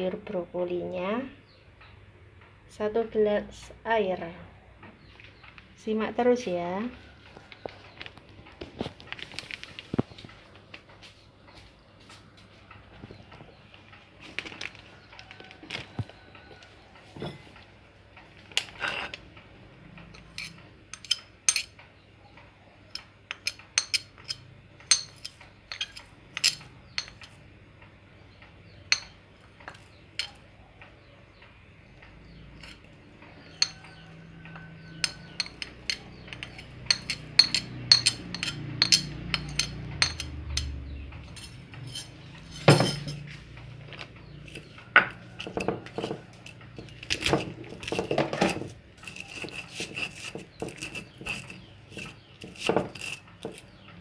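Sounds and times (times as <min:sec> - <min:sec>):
utensils and dishes clinking: 0:20.0 - 0:21.8, 0:22.9 - 0:27.4, 0:32.5 - 0:53.9.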